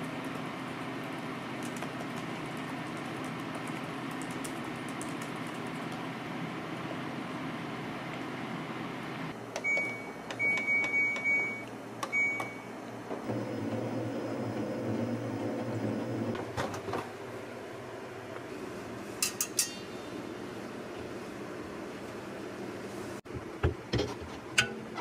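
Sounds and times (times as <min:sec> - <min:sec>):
control panel beeping: 0:09.6 - 0:12.7
motor humming: 0:13.2 - 0:16.4.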